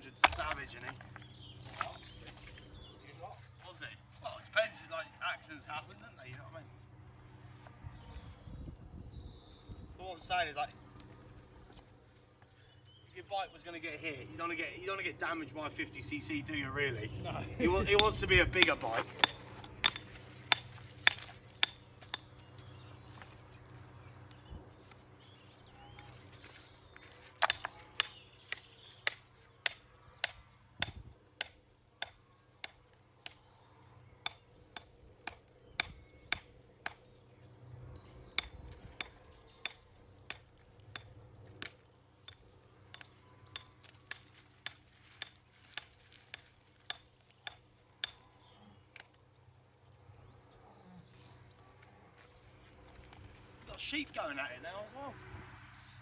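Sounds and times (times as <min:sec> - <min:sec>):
hammer striking stone: 0:00.2 - 0:01.1, 0:17.9 - 0:22.2, 0:27.4 - 0:28.2.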